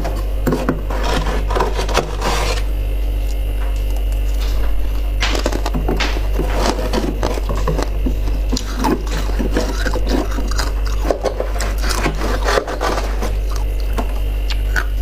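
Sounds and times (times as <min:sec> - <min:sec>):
scraping and rubbing: 0:00.0 - 0:02.7, 0:04.3 - 0:14.2
loud electrical hum: 0:00.0 - 0:15.0.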